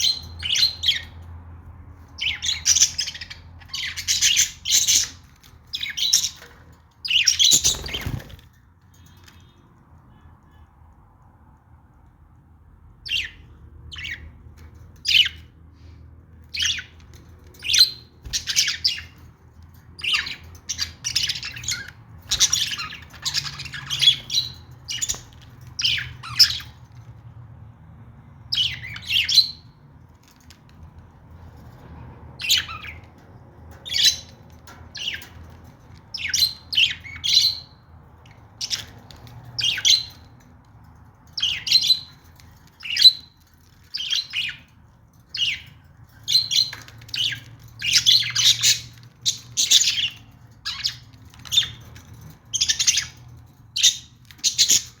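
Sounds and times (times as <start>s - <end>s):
budgerigars chirping and squawking: 0.0s - 1.3s, 2.0s - 9.6s, 13.0s - 27.2s, 28.4s - 30.7s, 32.4s - 40.4s, 41.2s - 55.0s.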